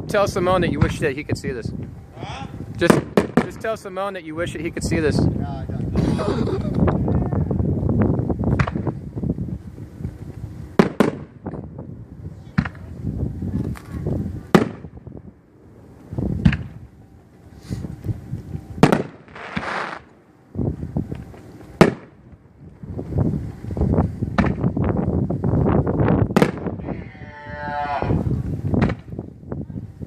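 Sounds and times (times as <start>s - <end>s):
low rumbling: 0.0s - 30.0s
fireworks bursting with sharp bangs: 2.8s - 3.9s, 8.4s - 13.0s, 13.6s - 15.1s, 15.8s - 16.9s, 18.8s - 24.8s, 26.2s - 26.8s, 28.6s - 29.2s.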